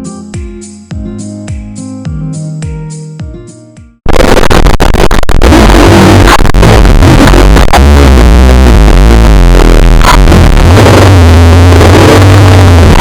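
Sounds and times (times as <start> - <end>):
electronic synthesizer music: 0.0 - 13.0
heavy bass notes: 4.1 - 13.0.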